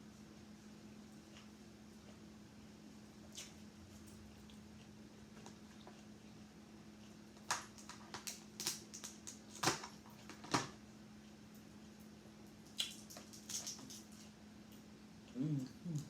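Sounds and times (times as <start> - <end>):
steady low hum: 0.0 - 7.8, 10.8 - 16.0
eating crunches and mouth sounds: 1.1 - 10.5, 11.2 - 16.0.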